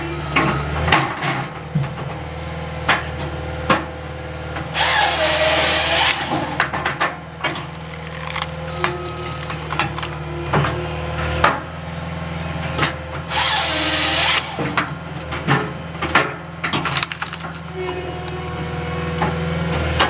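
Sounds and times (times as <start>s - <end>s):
engine and hydraulics running: 0.0s - 20.0s
chainsaw cutting log: 4.7s - 6.7s, 7.5s - 10.2s, 13.3s - 15.0s
wood splitting knocks and cracks: 4.8s - 10.3s, 14.1s - 18.7s.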